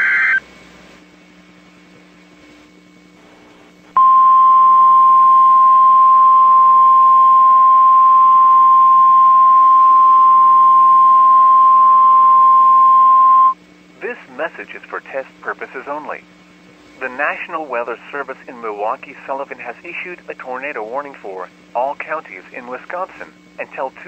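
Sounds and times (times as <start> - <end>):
steady high alarm tone: 4.0 - 13.6.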